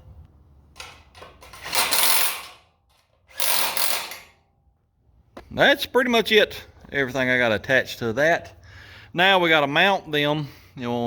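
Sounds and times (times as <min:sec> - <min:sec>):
tool rattling running a nut: 0:00.8 - 0:04.4.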